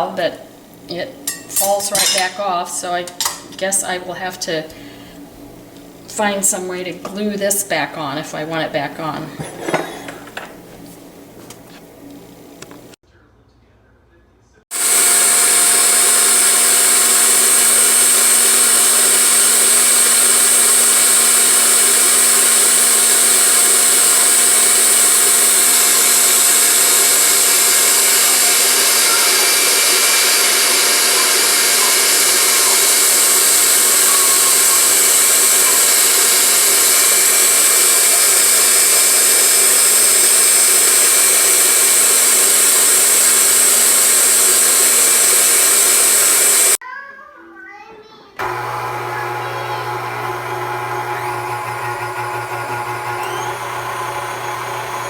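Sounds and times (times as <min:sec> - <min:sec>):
stand mixer motor whine: 0:14.8 - 0:46.8, 0:48.4 - 0:55.0.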